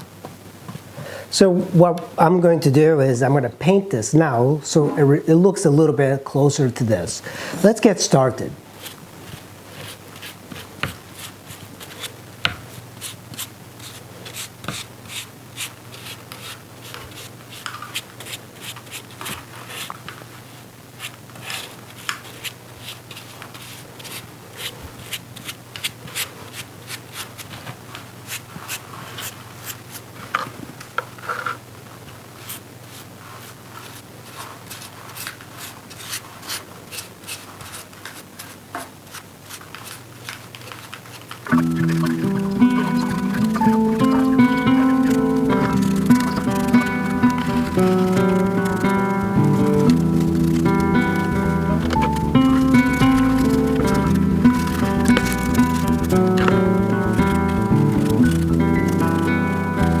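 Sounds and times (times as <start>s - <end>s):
paintbrush strokes on plastic: 40.6s - 60.0s.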